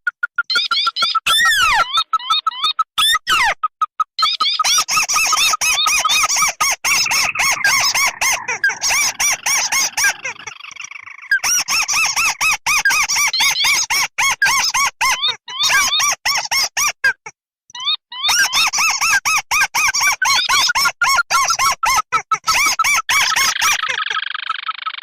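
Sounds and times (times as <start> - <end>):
crake calls: 0.0 - 14.6.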